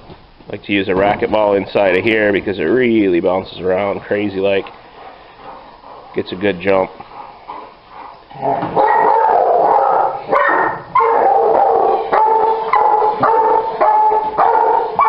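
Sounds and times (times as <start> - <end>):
dog barking and howling: 8.4 - 15.0.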